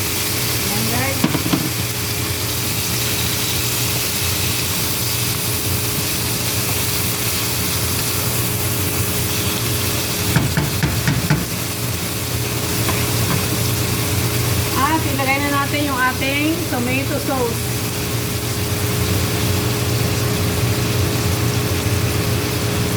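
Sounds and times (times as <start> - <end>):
meat sizzling in a pan: 0.0 - 22.9
utensil clacking against pan: 1.2 - 1.8, 10.3 - 11.6.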